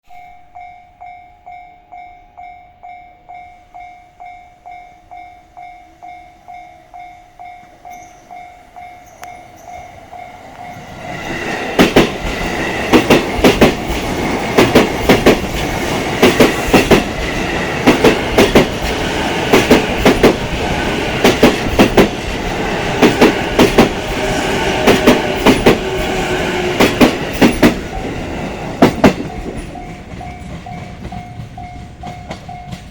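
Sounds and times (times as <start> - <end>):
train wheels clicking over rail joints: 9.0 - 32.9.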